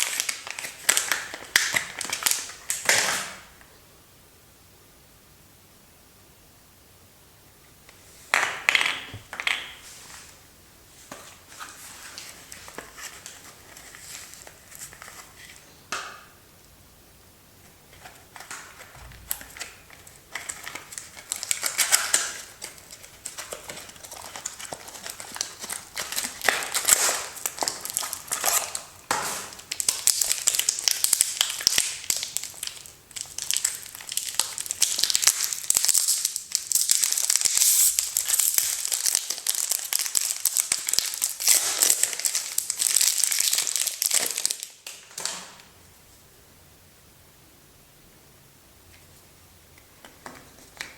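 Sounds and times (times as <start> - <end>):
soap wrapper crinkling: 0.0 - 3.3, 18.0 - 45.7.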